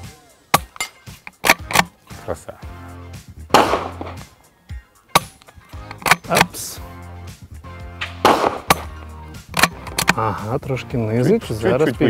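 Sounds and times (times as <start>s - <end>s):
background music: 0.0s - 12.0s
rifle bolt cycling: 0.5s - 2.0s, 5.1s - 6.6s, 8.0s - 10.2s
quiet rifle shots: 3.5s - 4.3s, 8.0s - 10.2s.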